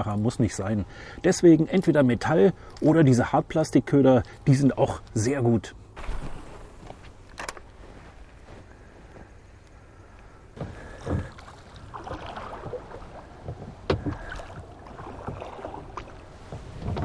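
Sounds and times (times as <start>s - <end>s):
oars knocking in oarlocks: 10.6s - 17.0s
water swishing: 10.6s - 17.0s.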